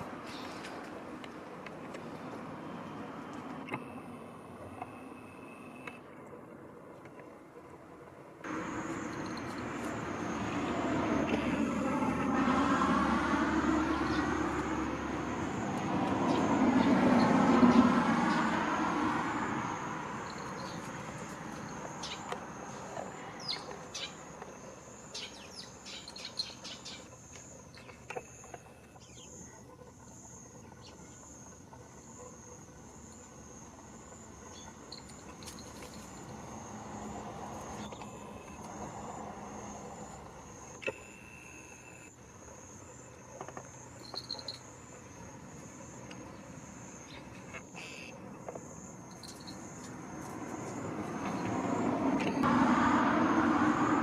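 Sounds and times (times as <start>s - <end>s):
insects trilling: 8.5s - 54.0s
bird chirps: 23.4s - 24.2s, 25.1s - 28.4s.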